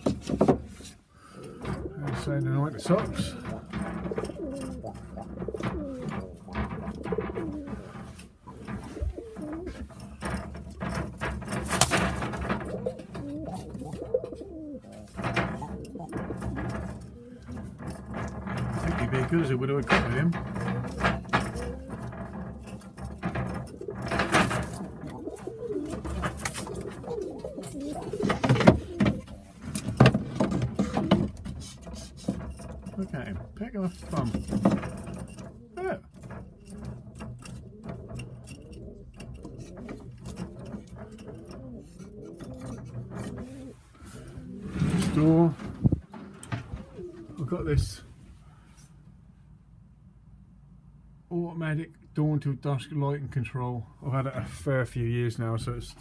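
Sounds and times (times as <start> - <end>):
pigeons cooing: 1.2 - 2.2, 2.8 - 18.9, 20.4 - 32.7, 34.2 - 47.9.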